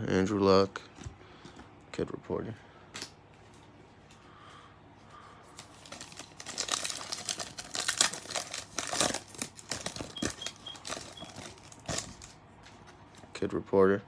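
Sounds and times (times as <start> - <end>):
foil wrapper crinkling: 5.5 - 12.9
cards being handled: 5.5 - 13.3.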